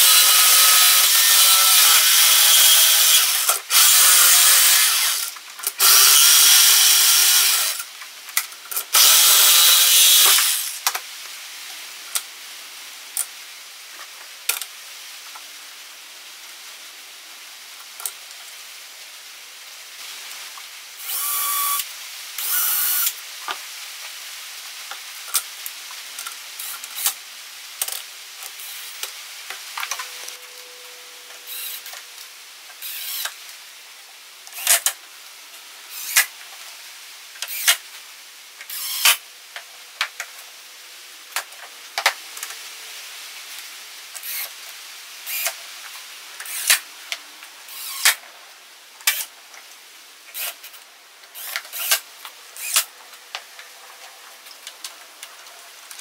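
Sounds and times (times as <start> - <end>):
power drill running: 0.0 - 7.8, 8.9 - 10.8, 21.0 - 21.8, 31.5 - 31.9, 32.8 - 33.3, 47.7 - 48.2, 52.6 - 52.8.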